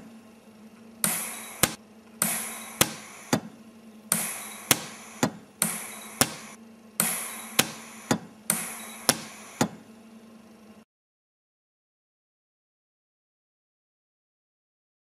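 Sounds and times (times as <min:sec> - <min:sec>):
steady low hum: 0:00.0 - 0:10.9.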